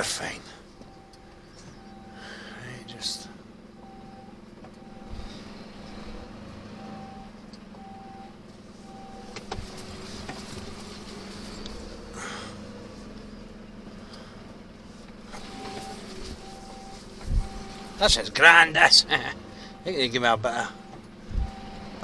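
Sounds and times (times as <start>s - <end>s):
reversing alarm beeping: 0.0s - 9.5s, 15.3s - 22.0s
diesel engine running: 0.0s - 22.0s.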